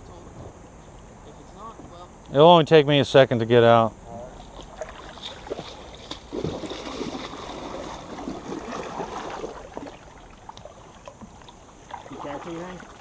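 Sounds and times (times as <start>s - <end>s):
water splashing around a kayak: 4.4s - 13.0s.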